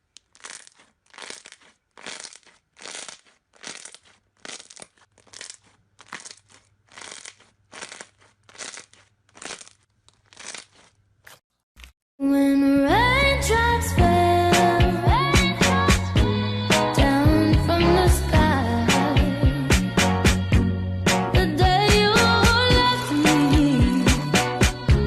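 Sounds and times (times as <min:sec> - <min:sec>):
slime squeezed by hand: 0:00.0 - 0:11.9.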